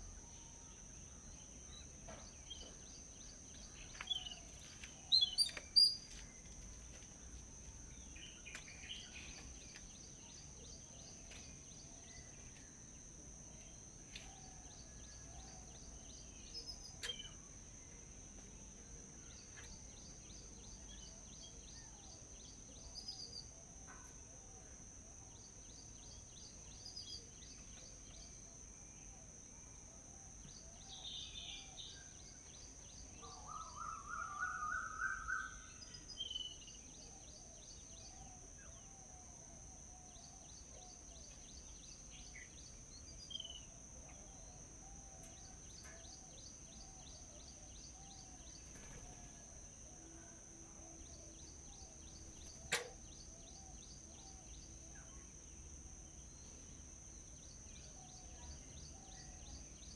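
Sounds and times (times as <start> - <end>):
wild birds chirping: 0.0 - 18.1, 30.3 - 59.9.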